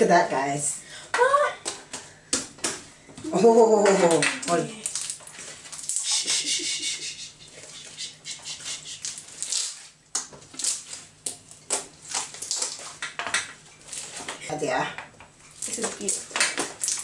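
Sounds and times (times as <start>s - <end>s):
slime squelching and crackling: 3.6s - 6.5s, 7.6s - 13.2s, 15.5s - 17.0s.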